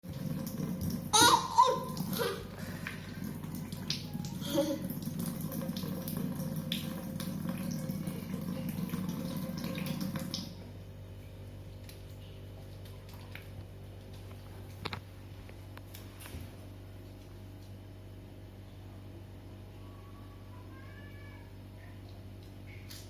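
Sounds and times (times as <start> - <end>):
water running from tap into sink: 0.0 - 10.6.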